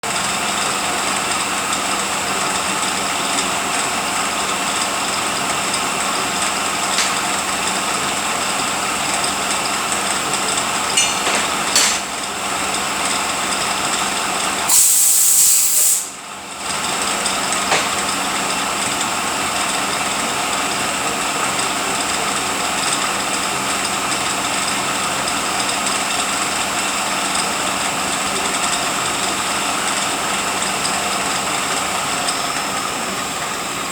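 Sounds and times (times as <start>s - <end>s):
loud air hiss: 14.6s - 16.3s.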